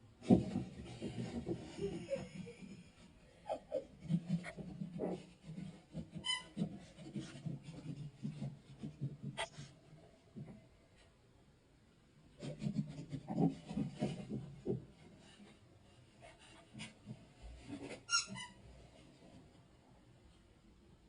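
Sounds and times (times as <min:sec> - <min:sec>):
high squeak: 0:18.1 - 0:18.6.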